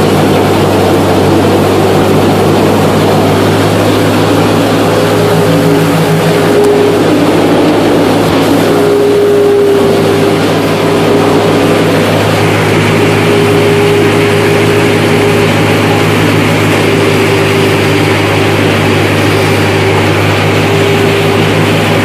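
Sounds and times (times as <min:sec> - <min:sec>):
combine harvester droning: 0:00.0 - 0:22.0.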